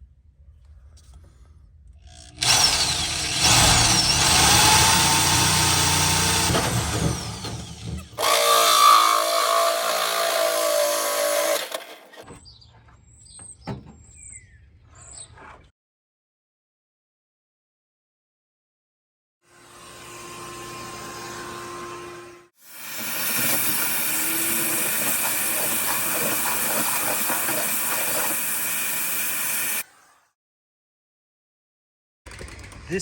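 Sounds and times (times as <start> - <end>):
drill cutting sheet metal: 2.1 - 12.2, 19.6 - 29.9.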